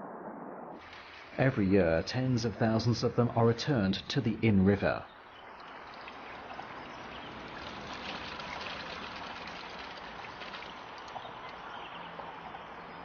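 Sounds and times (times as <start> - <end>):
small water splashes: 0.8 - 2.3, 5.1 - 13.0
river water flowing: 0.8 - 13.0.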